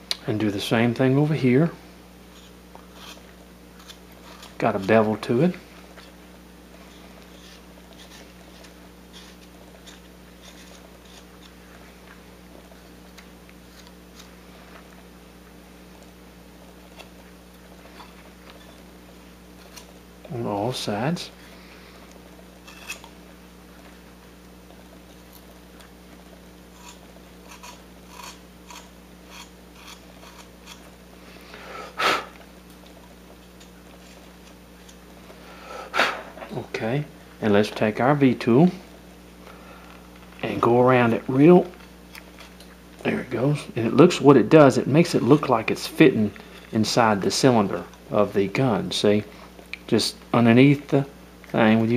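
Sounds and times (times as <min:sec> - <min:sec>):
low electrical hum: 0:00.0 - 0:51.9
knife scraping wood: 0:02.3 - 0:04.6, 0:06.8 - 0:11.6, 0:22.6 - 0:23.1, 0:26.7 - 0:30.9.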